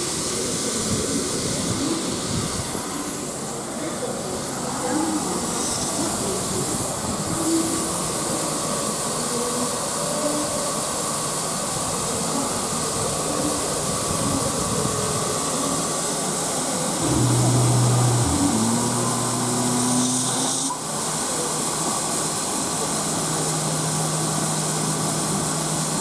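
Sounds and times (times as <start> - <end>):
steam locomotive hissing: 0.0 - 26.0
steady low hum: 17.0 - 20.8.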